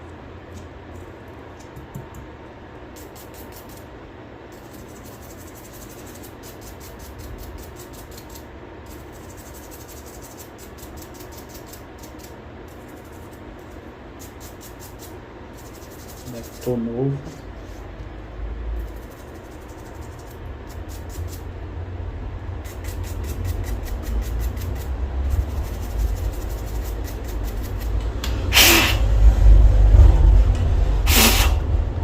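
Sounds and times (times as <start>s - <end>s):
brush scrubbing circuit board: 4.6s - 13.4s, 14.2s - 16.9s, 22.7s - 28.0s.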